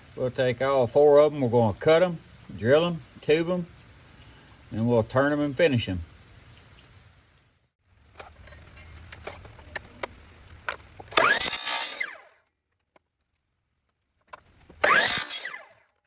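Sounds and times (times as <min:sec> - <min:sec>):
power saw motor humming: 0:11.0 - 0:12.4, 0:14.7 - 0:15.8
saw blade cutting: 0:11.1 - 0:12.3, 0:14.7 - 0:15.9.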